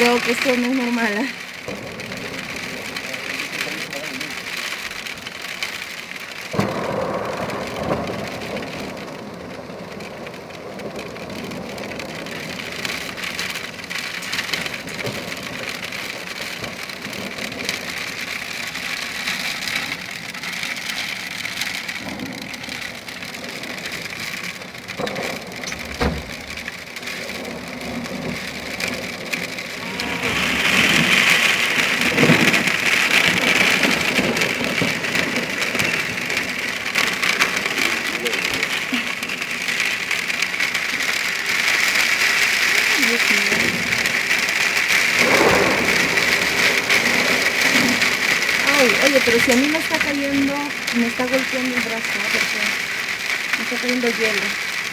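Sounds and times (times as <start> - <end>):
hail knocking: 0.0 - 54.9
heavy rain and hail hissing: 0.0 - 54.9.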